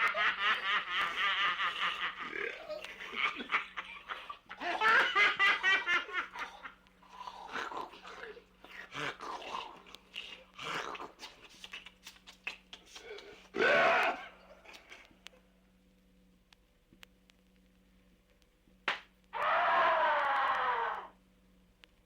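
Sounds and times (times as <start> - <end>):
high-pitched laughter: 0.0 - 6.8
steady low hum: 0.0 - 22.0.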